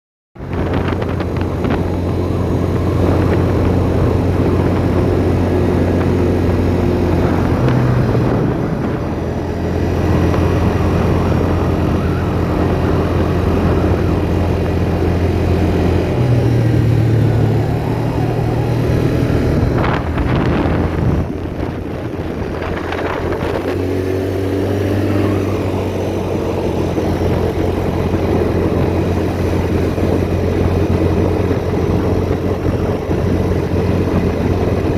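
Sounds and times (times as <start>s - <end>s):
atv engine running: 0.4s - 34.9s.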